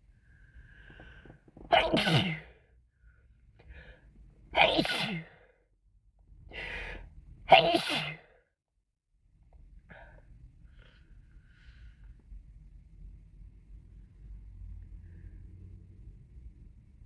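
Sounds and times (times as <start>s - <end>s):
person sneezing: 1.6s - 2.6s, 4.6s - 5.4s, 7.5s - 8.4s.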